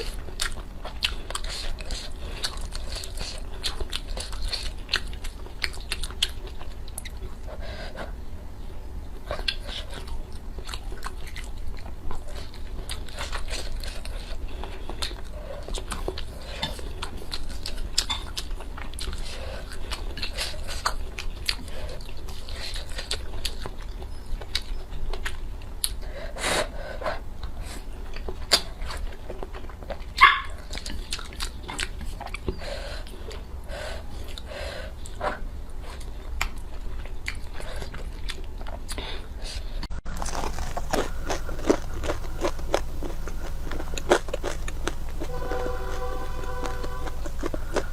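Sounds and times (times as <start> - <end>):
chewing and biting food: 0.0 - 8.2, 9.2 - 47.9
brief loud pitched sound: 45.2 - 47.8.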